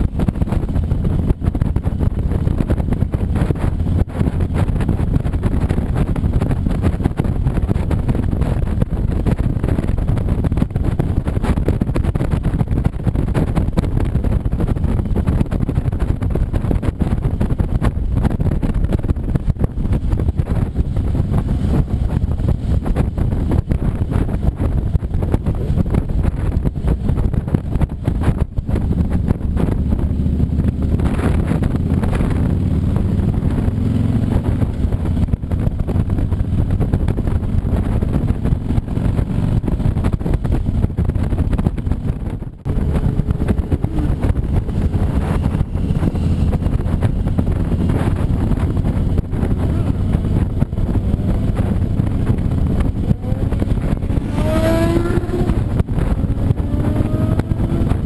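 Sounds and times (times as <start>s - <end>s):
motorcycle engine running: 0.0s - 58.0s
wind noise: 0.0s - 58.0s
rising whine: 42.6s - 58.0s.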